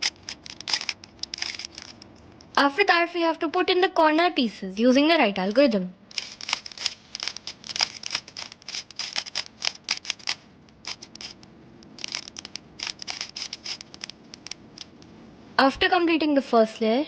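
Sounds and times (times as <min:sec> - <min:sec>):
puzzle cube plastic clicks: 0:00.0 - 0:02.6, 0:06.1 - 0:15.0.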